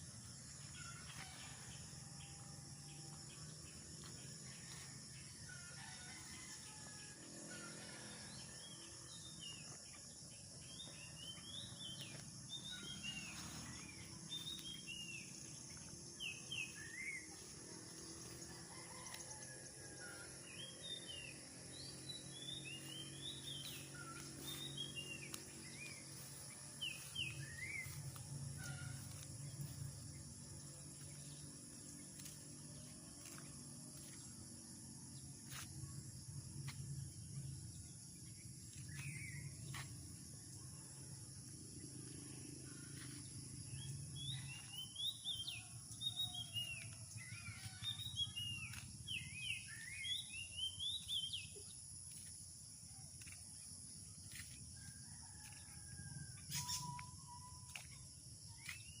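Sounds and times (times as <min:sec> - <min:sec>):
crickets droning: 0:00.0 - 0:59.0
small birds chirping: 0:21.9 - 0:29.8.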